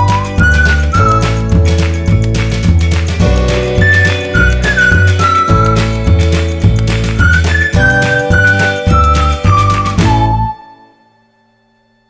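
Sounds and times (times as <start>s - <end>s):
upbeat music with whistle melody: 0.0s - 12.0s.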